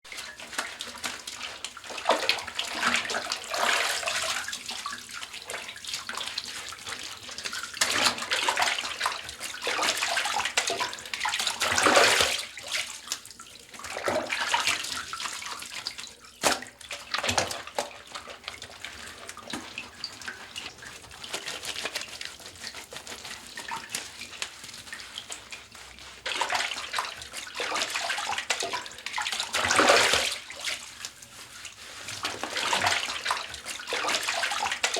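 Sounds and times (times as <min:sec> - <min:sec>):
bathwater splashing and sloshing: 0:00.1 - 0:34.9.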